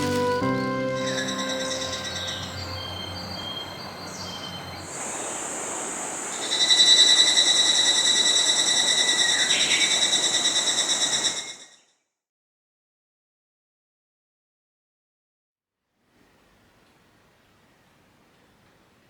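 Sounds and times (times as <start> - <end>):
insects trilling: 0.0 - 11.6.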